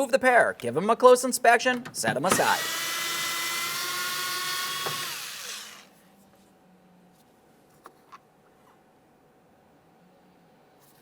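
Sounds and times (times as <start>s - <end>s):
power tool motor whine: 2.3s - 5.9s.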